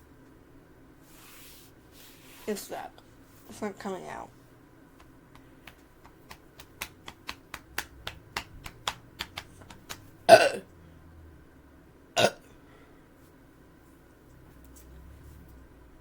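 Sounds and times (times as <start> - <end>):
person burping: 10.3 - 10.7, 12.2 - 12.5.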